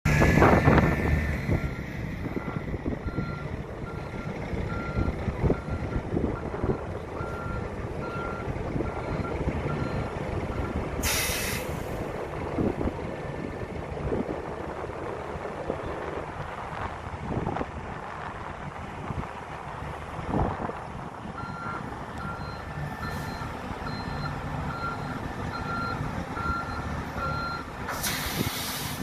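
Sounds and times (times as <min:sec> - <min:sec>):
diesel engine rumble: 0:00.0 - 0:29.0
reversing alarm beeping: 0:01.5 - 0:11.5, 0:21.4 - 0:27.7
air brake hiss: 0:11.0 - 0:12.0, 0:27.9 - 0:29.0.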